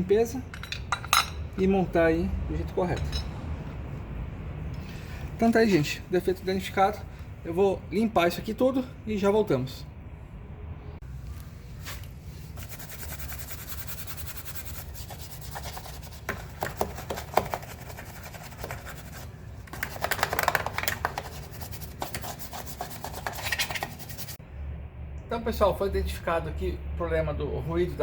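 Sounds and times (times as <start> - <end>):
scrubbing scooter parts by hand: 11.8 - 24.4.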